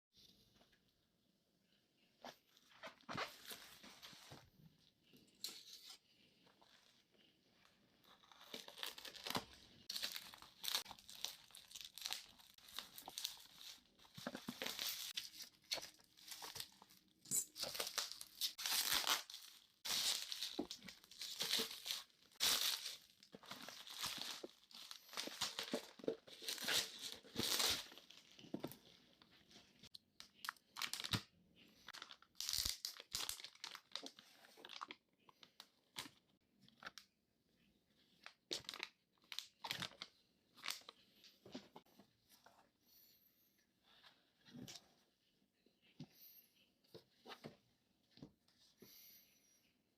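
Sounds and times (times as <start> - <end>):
packaging torn and crinkled: 8.2 - 13.7, 17.4 - 27.9, 32.0 - 34.8.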